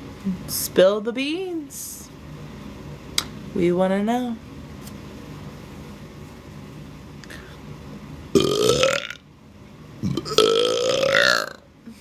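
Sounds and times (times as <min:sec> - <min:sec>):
woman belching: 0:08.4 - 0:09.2, 0:10.0 - 0:11.6.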